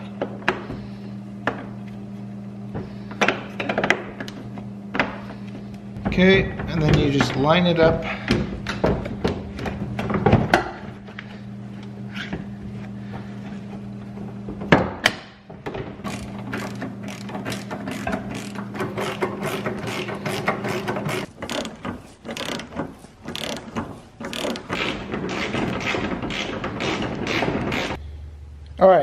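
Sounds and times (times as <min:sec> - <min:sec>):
steady low hum: 0:00.0 - 0:29.0
ratchet wrench clicking: 0:16.1 - 0:22.7, 0:23.3 - 0:28.0.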